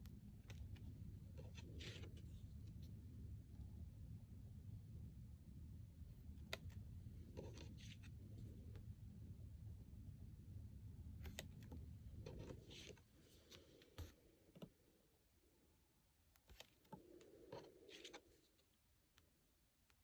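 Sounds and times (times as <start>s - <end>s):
cards sliding and clicking: 11.2s - 14.2s, 16.4s - 18.3s.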